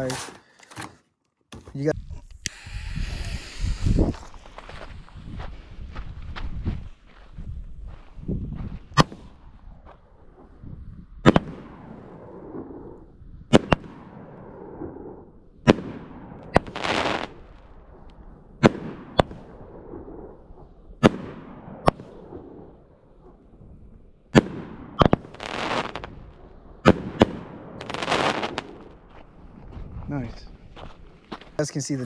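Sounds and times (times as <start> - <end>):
brief hiss: 2.4 - 4.5
fireworks bangs: 26.8 - 28.9.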